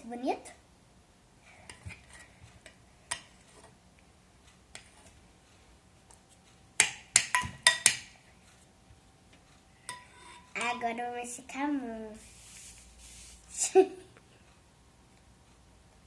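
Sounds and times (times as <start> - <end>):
utensil clinking against a bowl: 6.8 - 8.1.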